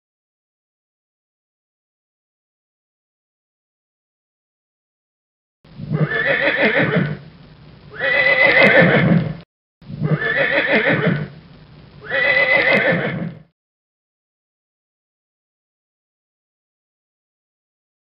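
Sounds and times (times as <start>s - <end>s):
horse neighing: 5.8s - 7.2s, 8.0s - 9.4s, 10.0s - 11.3s, 12.0s - 13.4s.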